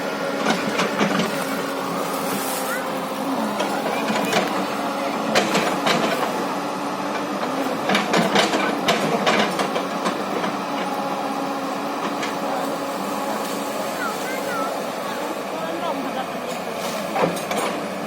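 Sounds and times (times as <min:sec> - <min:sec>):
excavator diesel engine running: 0:00.0 - 0:18.0
excavator knocks and clanks: 0:00.3 - 0:01.8, 0:03.4 - 0:11.2, 0:11.9 - 0:13.8, 0:16.3 - 0:18.0.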